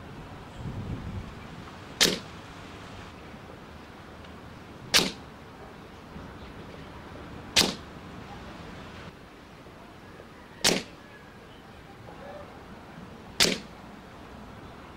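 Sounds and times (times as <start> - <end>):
air rifle shots: 2.0 - 2.3, 4.9 - 5.2, 7.6 - 7.9, 10.6 - 11.0, 13.4 - 13.7.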